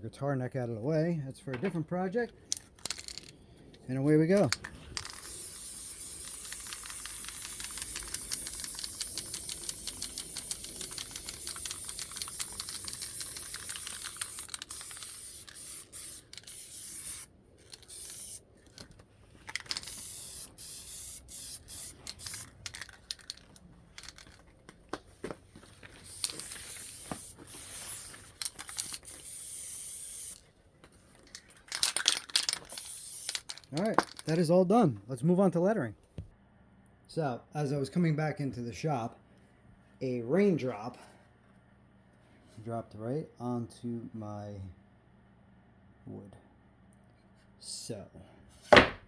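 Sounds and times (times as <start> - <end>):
aerosol spray can hissing: 5.0 - 17.3, 17.9 - 18.4, 19.8 - 22.5, 26.0 - 30.4.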